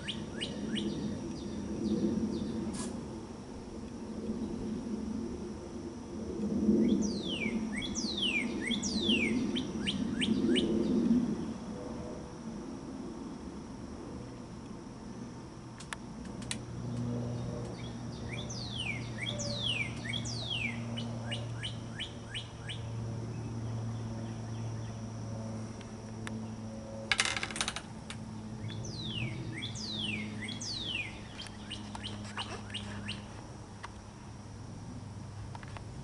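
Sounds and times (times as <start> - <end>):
bird singing whistled notes: 0.0 - 1.6, 6.8 - 10.7, 17.8 - 22.9, 28.6 - 33.3.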